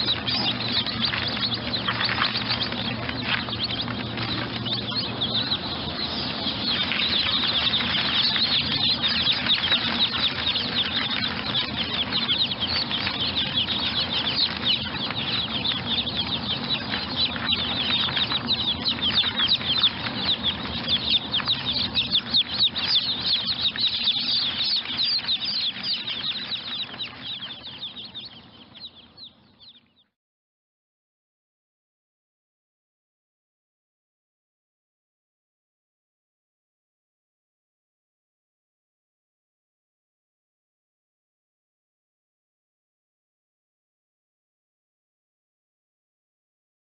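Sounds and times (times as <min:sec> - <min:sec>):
baby chicks peeping: 0:00.0 - 0:30.1.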